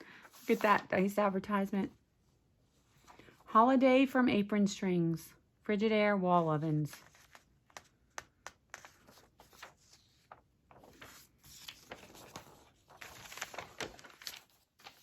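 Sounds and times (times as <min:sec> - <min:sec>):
paper rustling: 0:00.0 - 0:01.3, 0:06.7 - 0:15.0
soft clicks of binder pages: 0:06.9 - 0:15.0.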